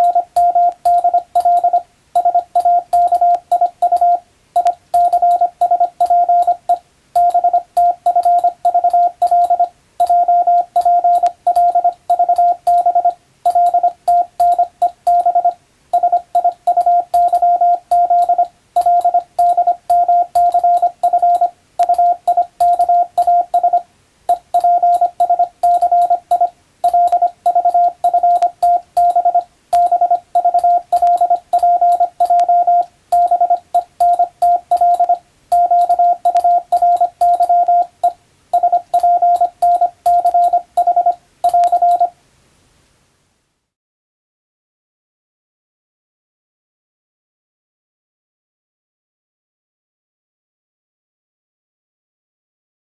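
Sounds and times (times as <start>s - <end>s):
morse code beeps: 0.0s - 42.1s.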